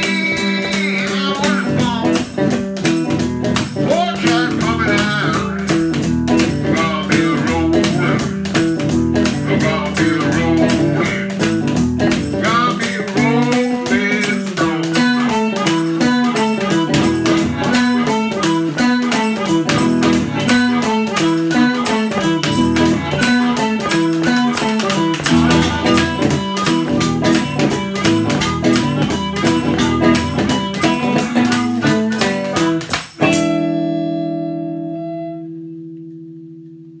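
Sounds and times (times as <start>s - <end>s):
washboard beat: 0.0s - 34.3s
boogie guitar: 0.0s - 37.0s.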